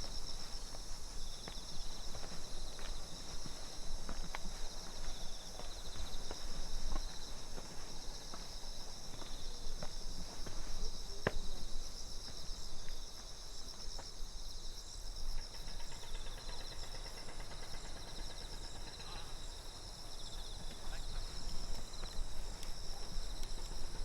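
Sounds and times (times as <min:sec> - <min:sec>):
footsteps walking: 0:00.0 - 0:11.5
crickets and insects chirping: 0:00.0 - 0:24.0.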